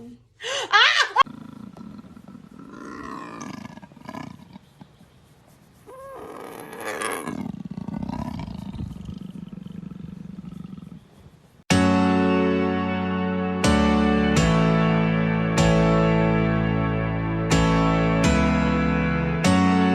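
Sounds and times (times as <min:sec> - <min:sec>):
animal calling: 0:00.8 - 0:11.6
loud guitar music: 0:11.7 - 0:19.9.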